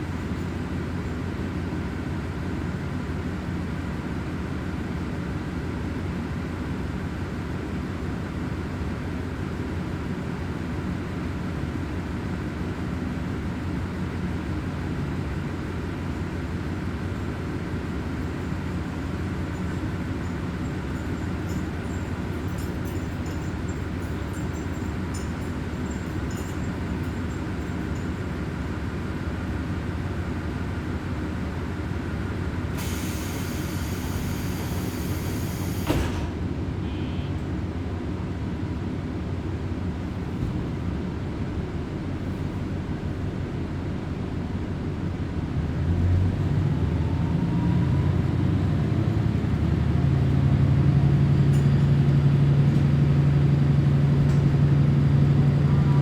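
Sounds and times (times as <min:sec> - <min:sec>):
railcar engine and rolling hum: 0:00.0 - 0:56.0
air hiss: 0:32.8 - 0:36.1.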